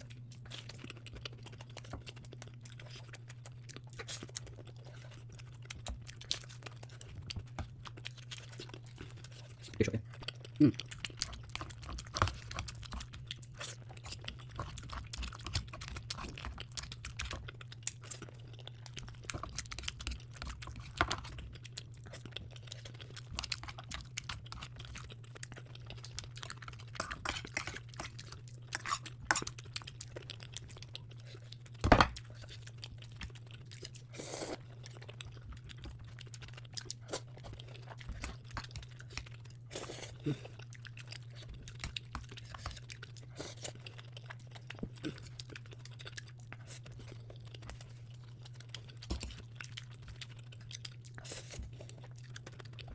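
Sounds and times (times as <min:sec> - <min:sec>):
chewing and crunching food: 0:00.0 - 0:52.9.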